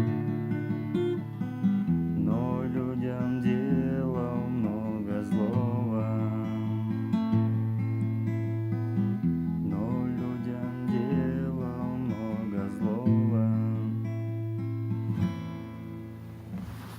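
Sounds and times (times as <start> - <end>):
acoustic guitar playing: 0.0 - 16.9.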